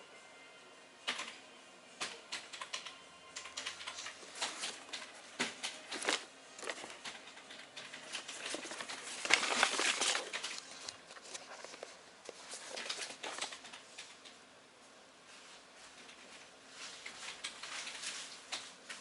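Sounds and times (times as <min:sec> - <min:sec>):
rustling: 0:08.0 - 0:13.8, 0:15.2 - 0:19.0.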